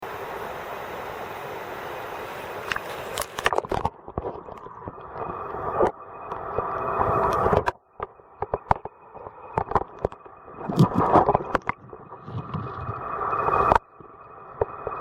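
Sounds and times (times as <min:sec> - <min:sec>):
stream water rushing: 0:00.0 - 0:03.9.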